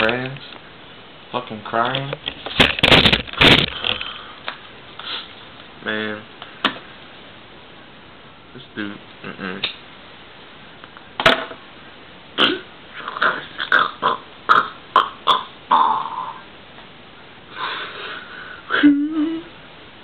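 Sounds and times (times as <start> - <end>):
man sobbing and gasping: 17.6 - 19.5.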